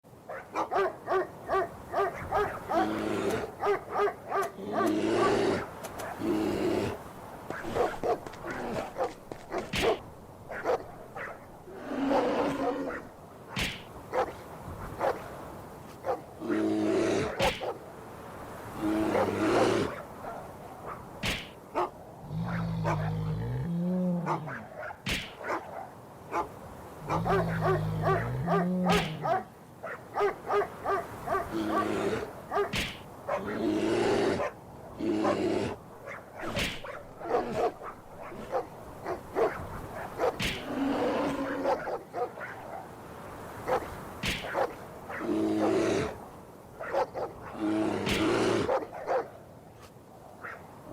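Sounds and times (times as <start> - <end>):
dogs barking: 0.3 - 5.3, 7.5 - 11.5, 12.9 - 14.4, 15.0 - 15.2, 16.0 - 16.3, 21.7 - 23.3, 24.2 - 33.6, 36.0 - 40.7, 41.4 - 42.9, 43.6 - 45.3, 46.8 - 47.6, 48.6 - 49.4
low dog vocalisations: 21.8 - 24.7, 27.0 - 29.5.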